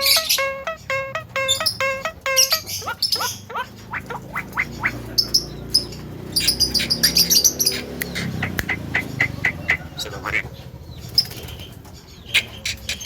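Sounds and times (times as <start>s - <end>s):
myna calling: 0.0s - 5.2s.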